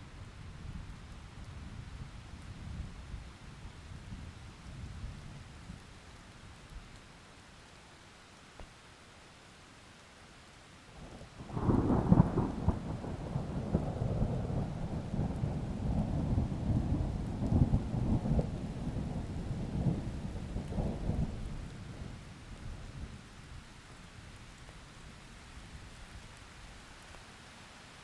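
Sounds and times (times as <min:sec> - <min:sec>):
light rain hiss: 0:00.0 - 0:28.0
thunder rumbling: 0:11.5 - 0:22.0.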